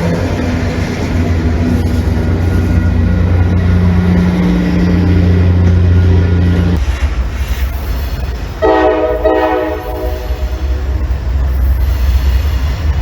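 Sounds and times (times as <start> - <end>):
train rumbling: 0.0 - 13.0
locomotive air horn chord: 8.6 - 11.0.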